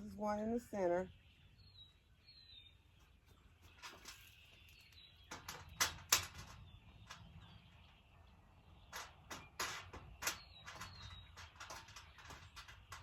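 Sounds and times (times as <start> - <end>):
metal panels clanking: 5.3 - 7.6, 8.8 - 13.0.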